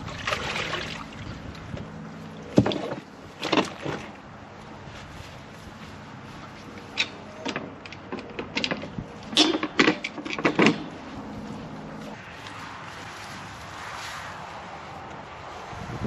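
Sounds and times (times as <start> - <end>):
steady background noise: 0.0 - 16.0
sharp knocks and clanks: 6.8 - 11.3.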